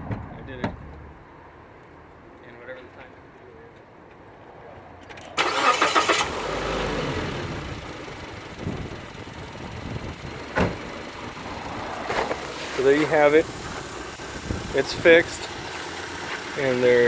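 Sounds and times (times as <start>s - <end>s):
car engine starting: 5.1s - 17.0s.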